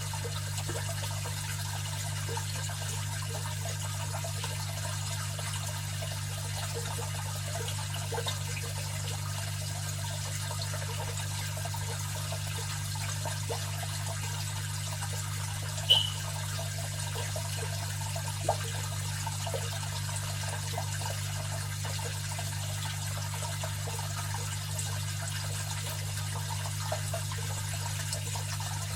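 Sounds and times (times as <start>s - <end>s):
filter pump hum: 0.0s - 28.9s
water trickling and splashing: 0.0s - 28.9s
short high ping: 15.9s - 16.3s.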